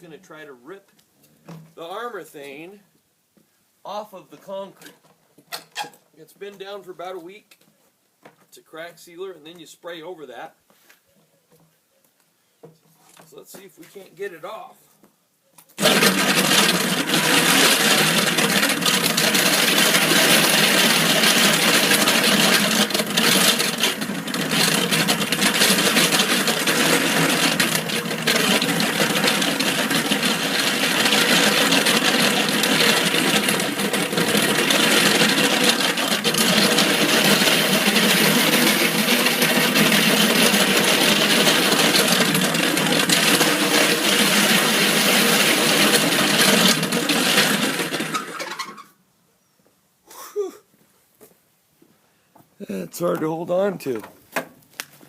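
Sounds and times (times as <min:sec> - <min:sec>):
power tool grinding concrete: 0:15.8 - 0:48.9.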